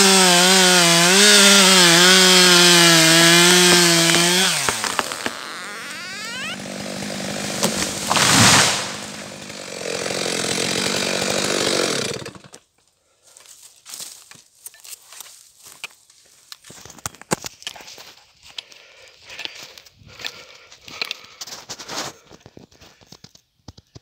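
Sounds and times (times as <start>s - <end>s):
chainsaw slowing to idle: 0.0s - 12.6s
tree crashing down: 1.4s - 12.2s.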